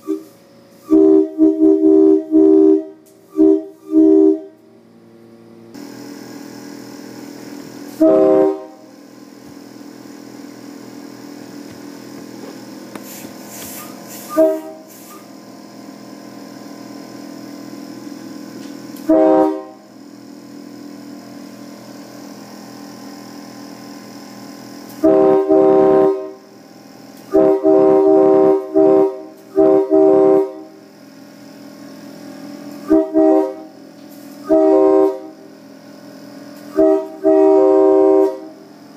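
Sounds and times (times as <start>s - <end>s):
train-style air horn blasts: 0.0s - 4.6s, 7.9s - 9.0s, 13.8s - 15.3s, 19.0s - 19.9s, 24.9s - 26.5s, 27.3s - 30.8s, 32.8s - 33.8s, 34.4s - 35.5s, 36.6s - 38.7s
steady hum: 0.0s - 38.9s.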